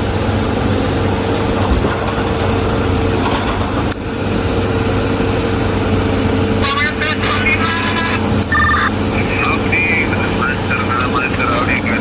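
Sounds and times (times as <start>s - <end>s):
diesel engine idling: 0.0s - 12.0s
thin steady whine: 6.6s - 12.0s.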